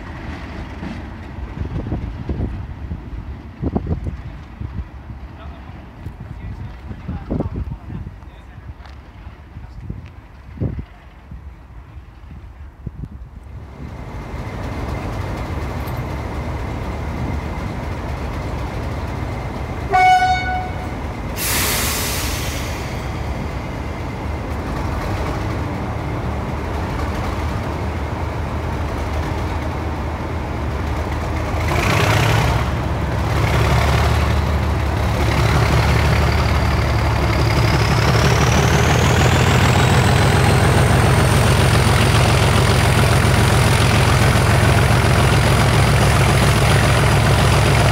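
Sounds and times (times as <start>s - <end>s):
diesel locomotive engine: 0.0s - 47.9s
train horn toot: 19.9s - 21.0s
air hiss: 21.4s - 23.2s.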